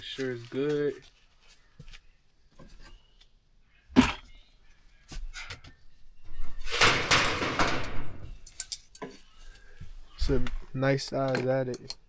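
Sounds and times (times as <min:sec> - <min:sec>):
rustling and scraping of tools: 0:00.0 - 0:03.4, 0:04.0 - 0:11.6.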